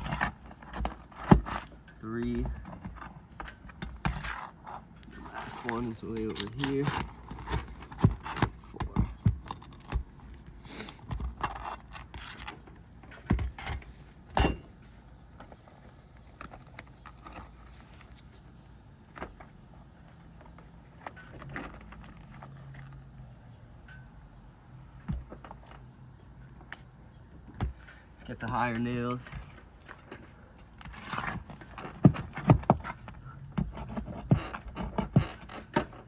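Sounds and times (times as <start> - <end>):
metal bar prying roofing nails: 11.0 - 14.8, 27.5 - 36.0.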